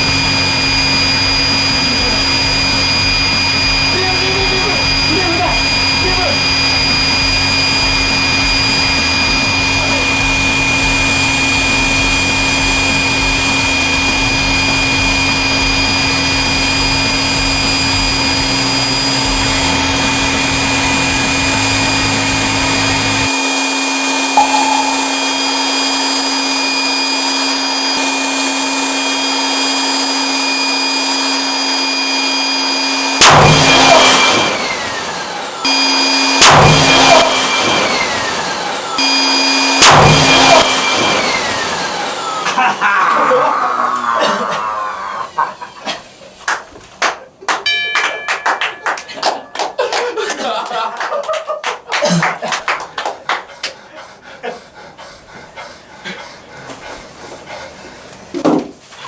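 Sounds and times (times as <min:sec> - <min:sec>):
sudden loud noise: 0:24.4 - 0:26.3
electric air pump humming: 0:24.4 - 0:43.0.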